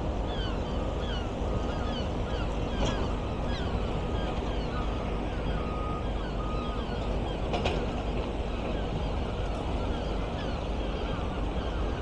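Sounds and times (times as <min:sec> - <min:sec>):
demolition machinery rumble: 0:00.0 - 0:12.0
gull cries: 0:00.3 - 0:07.5, 0:08.5 - 0:12.0
reversing alarm beeping: 0:05.4 - 0:07.2.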